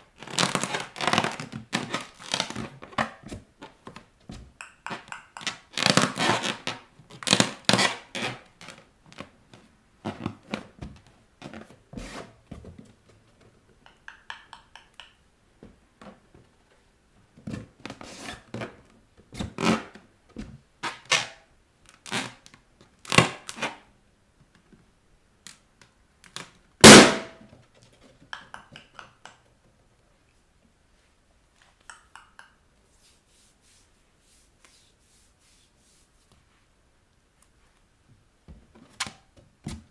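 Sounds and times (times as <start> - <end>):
rubber balloons squeaking underfoot: 0.2 - 2.8, 5.4 - 9.3
balloon popping: 26.8 - 27.4.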